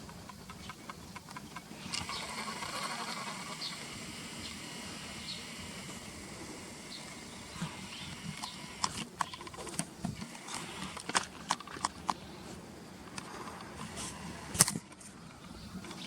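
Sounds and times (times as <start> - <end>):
swallows twittering: 0.5 - 10.9.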